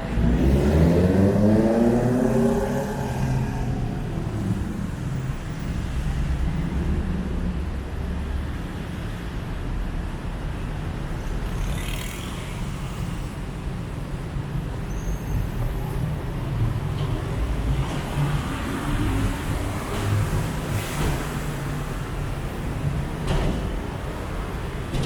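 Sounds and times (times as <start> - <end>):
vehicle engine accelerating: 0.0 - 7.2
low traffic rumble: 0.0 - 25.0.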